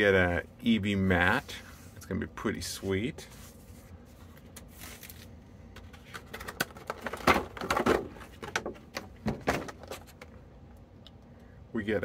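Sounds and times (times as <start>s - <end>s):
packaging rustling and clicking: 4.4s - 10.3s.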